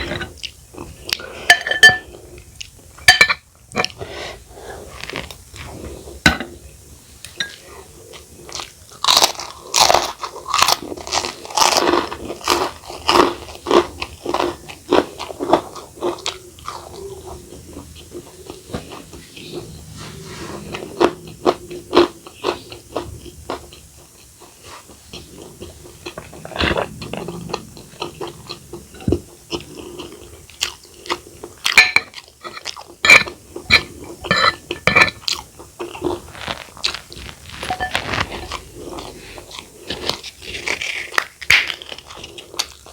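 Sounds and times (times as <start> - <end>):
crunching bites and chewing: 8.5 - 17.0, 20.6 - 42.9.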